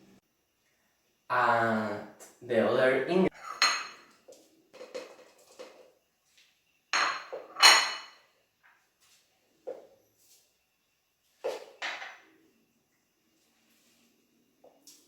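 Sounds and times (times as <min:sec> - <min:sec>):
dishes clinking: 0:03.3 - 0:04.2, 0:06.9 - 0:08.2
dishes knocking: 0:03.5 - 0:04.1, 0:07.0 - 0:08.2.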